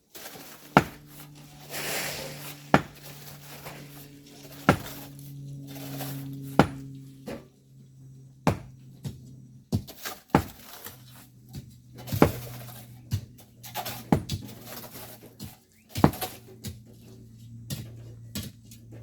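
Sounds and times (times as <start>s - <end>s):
steady low hum: 0.0s - 19.0s
hand tools striking rock: 0.2s - 6.9s, 8.4s - 16.8s.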